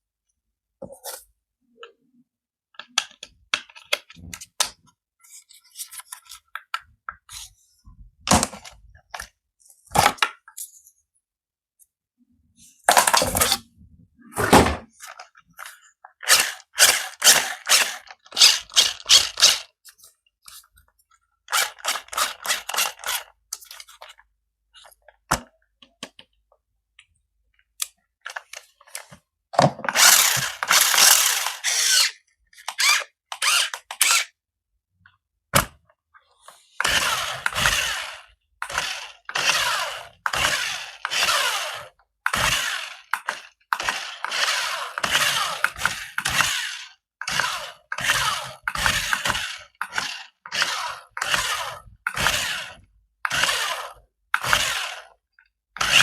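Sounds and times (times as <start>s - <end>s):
toy car motor whirring: 15.0s - 19.8s, 21.5s - 24.1s, 29.9s - 34.4s, 36.5s - 55.2s, 55.8s - 56.0s.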